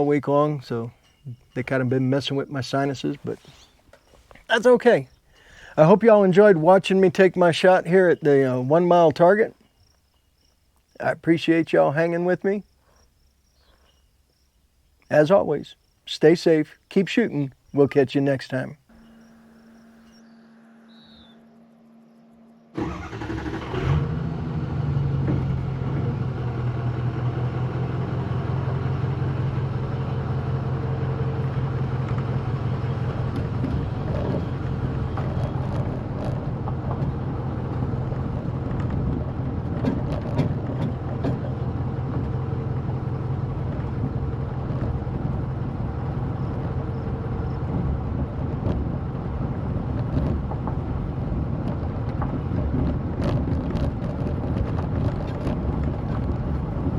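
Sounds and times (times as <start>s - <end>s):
vehicle engine droning: 18.9s - 56.9s.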